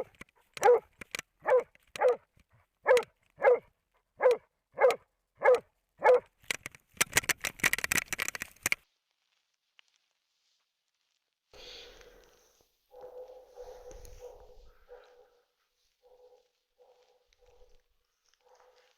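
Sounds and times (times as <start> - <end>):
dog barking: 0.0 - 6.3, 12.9 - 17.8, 18.4 - 18.9
crackling noise: 6.1 - 14.7.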